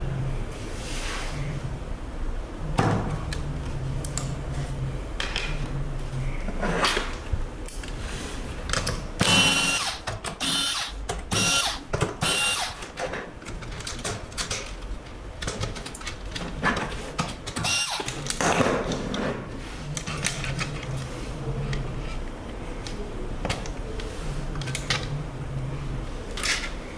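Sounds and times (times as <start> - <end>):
clicks and scrapes of small parts: 6.5 - 25.2, 26.3 - 26.8.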